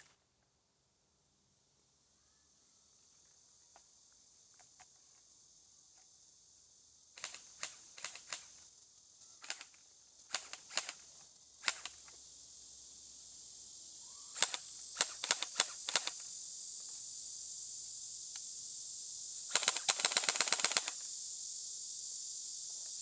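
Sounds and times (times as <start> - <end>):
steady high hiss: 0.0 - 23.0
airsoft gun clicks: 7.2 - 8.5, 9.4 - 11.0, 11.6 - 12.2, 14.4 - 16.3, 19.5 - 21.0.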